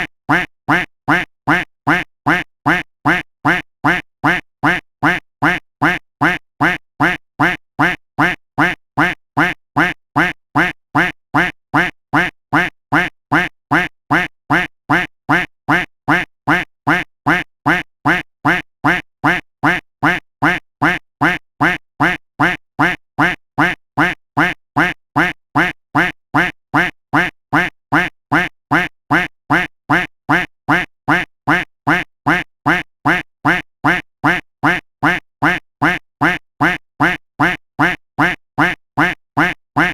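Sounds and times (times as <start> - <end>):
duck quack sound effect: 0.0 - 39.9.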